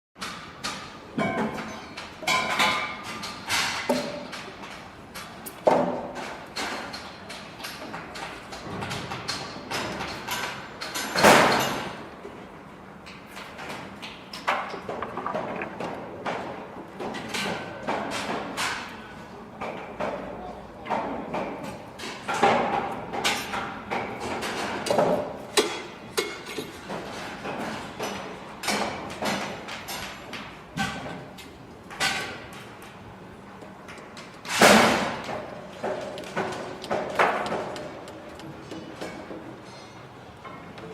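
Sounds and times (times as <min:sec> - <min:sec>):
knocks and clangs of tools: 0:00.2 - 0:12.4, 0:13.1 - 0:19.0, 0:19.6 - 0:32.9, 0:33.9 - 0:40.9
construction site hum: 0:00.2 - 0:40.9
tools and materials knocking: 0:14.5 - 0:17.1.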